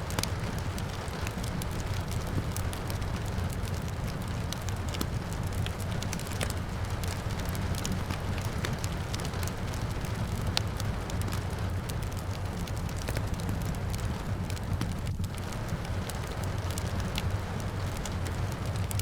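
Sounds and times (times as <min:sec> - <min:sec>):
soft rain: 0:00.0 - 0:19.0
wood fire crackling and popping: 0:00.0 - 0:19.0.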